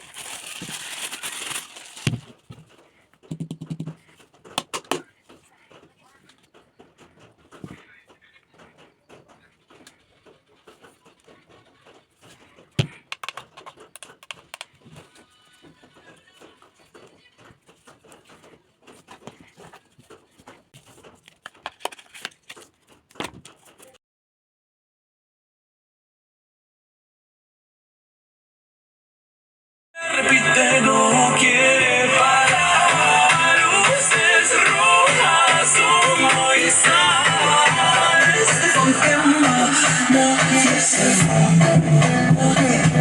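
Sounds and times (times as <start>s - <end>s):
packaging crinkling and tearing: 0.0s - 2.7s, 20.8s - 24.0s
packaging rustling and crinkling: 0.0s - 3.2s, 12.0s - 24.0s
clicks and knocks: 2.1s - 24.0s
sharp clicks: 12.9s - 14.8s.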